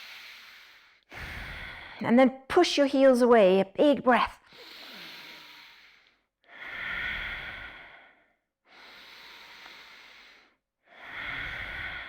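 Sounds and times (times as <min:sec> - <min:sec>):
woman breathing deeply: 0:00.0 - 0:02.0, 0:04.5 - 0:12.0.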